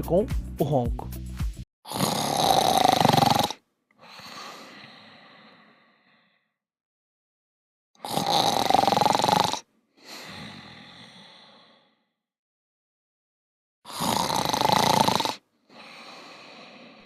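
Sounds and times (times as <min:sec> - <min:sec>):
person snoring: 0:01.9 - 0:06.5, 0:08.0 - 0:12.1, 0:13.9 - 0:17.0.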